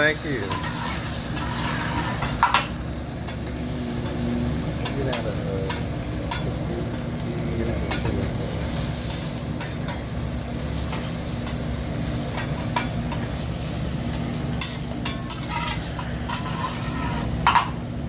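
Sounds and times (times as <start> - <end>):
food sizzling on a griddle: 0.0 - 18.0
steady low hum: 0.0 - 18.0
metal spatulas scraping and clacking: 0.4 - 2.7, 14.1 - 17.7.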